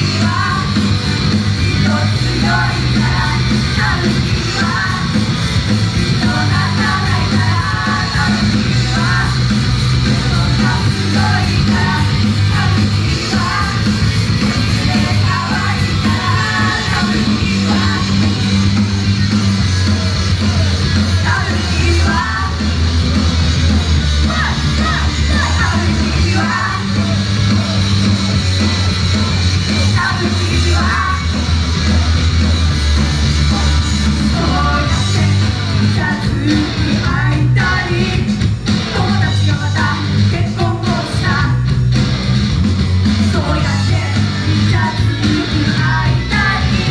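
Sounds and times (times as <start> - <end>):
sung and yelled vocals: 0.0 - 42.0, 42.9 - 46.9
live rock music: 0.0 - 46.9.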